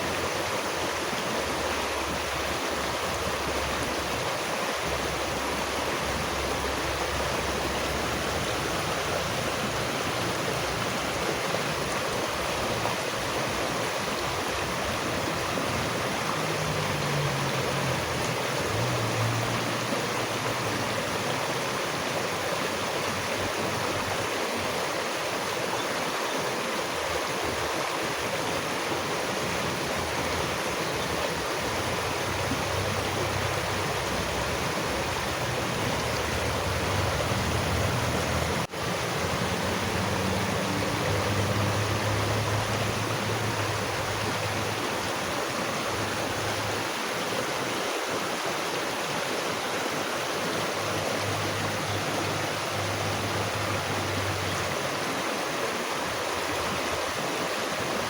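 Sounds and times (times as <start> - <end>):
stream water rushing: 0.0 - 58.0.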